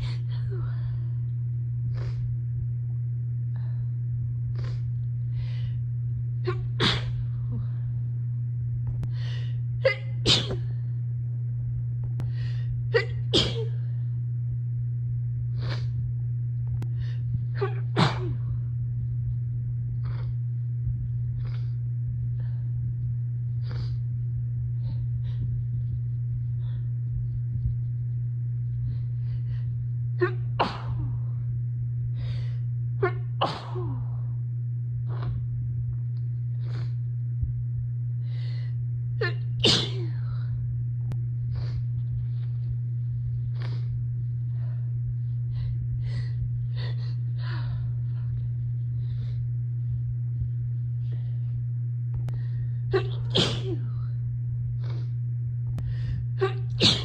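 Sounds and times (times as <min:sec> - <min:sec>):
steady low hum: 0:00.0 - 0:57.0
person sneezing: 0:06.5 - 0:07.2, 0:09.9 - 0:10.7, 0:17.6 - 0:18.4, 0:30.2 - 0:31.1, 0:33.0 - 0:34.1, 0:39.3 - 0:40.2, 0:52.9 - 0:53.9, 0:56.4 - 0:57.0.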